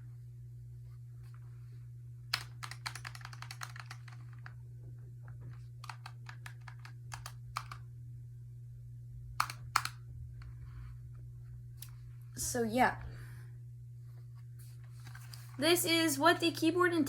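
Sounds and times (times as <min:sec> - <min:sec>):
steady low hum: 0:00.0 - 0:17.0
keyboard keys clacking: 0:02.4 - 0:04.1.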